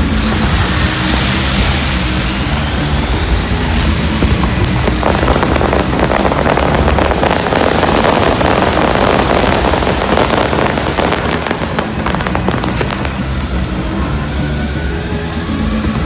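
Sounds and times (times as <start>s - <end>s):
fireworks crackling: 0.0s - 16.0s
music: 0.0s - 16.0s.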